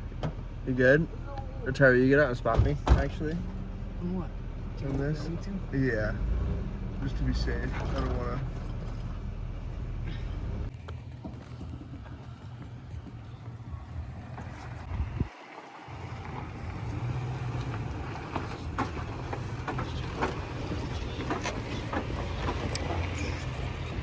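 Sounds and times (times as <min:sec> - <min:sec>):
truck engine running low: 0:00.0 - 0:24.0
wind buffeting microphone: 0:08.7 - 0:24.0
sharp clicks and crunches: 0:18.4 - 0:24.0.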